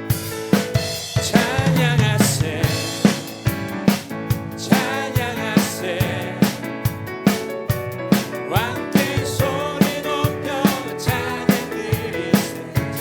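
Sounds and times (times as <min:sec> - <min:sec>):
drum kit beat: 0:00.0 - 0:13.0
worship band music: 0:00.0 - 0:13.0
people singing: 0:01.2 - 0:03.4, 0:04.5 - 0:07.5, 0:08.1 - 0:13.0.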